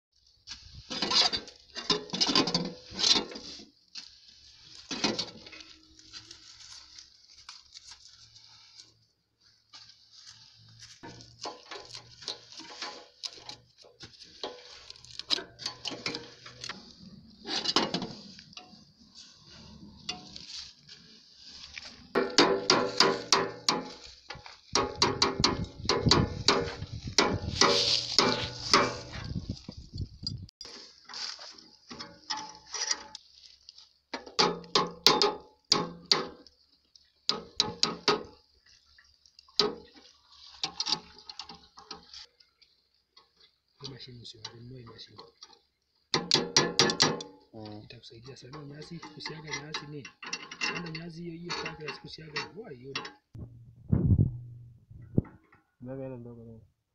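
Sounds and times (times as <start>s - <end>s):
hammer striking metal: 22.2s - 23.9s.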